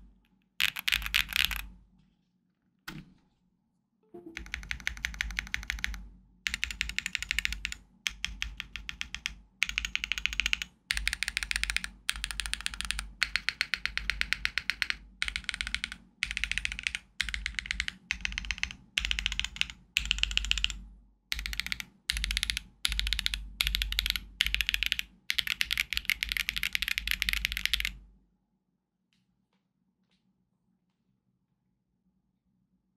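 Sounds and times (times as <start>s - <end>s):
clacky mechanical keyboard typing: 0.6s - 1.7s, 4.4s - 28.0s.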